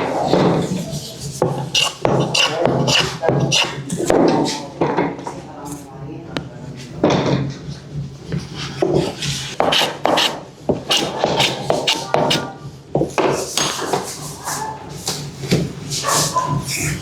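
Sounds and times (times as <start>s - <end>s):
rasping strokes on wooden bat: 0.0s - 4.6s, 8.2s - 12.5s, 13.2s - 17.0s.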